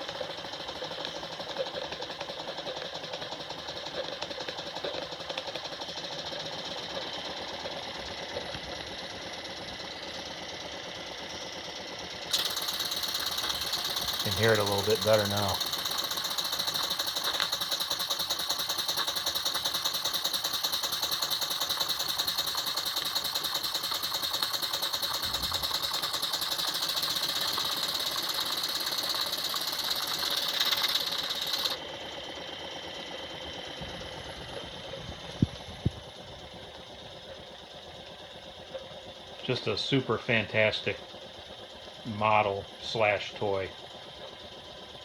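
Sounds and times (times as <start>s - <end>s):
steam engine exhaust beat: 0.0s - 45.0s
sharp clicks: 12.3s - 27.8s.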